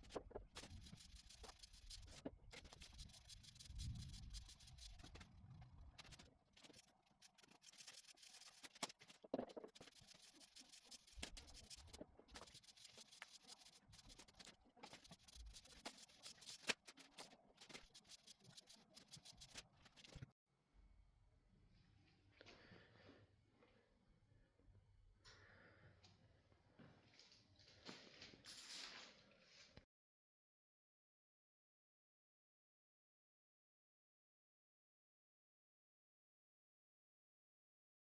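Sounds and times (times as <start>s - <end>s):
scratching and rubbing on wood: 0.0s - 20.3s.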